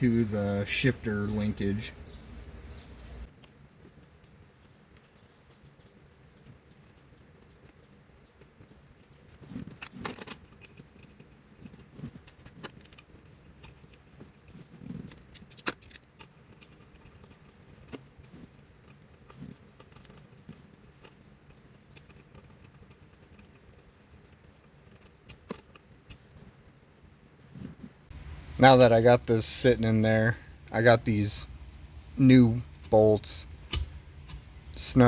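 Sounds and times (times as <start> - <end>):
metal parts clicking and tapping: 9.6 - 18.1, 31.6 - 35.0.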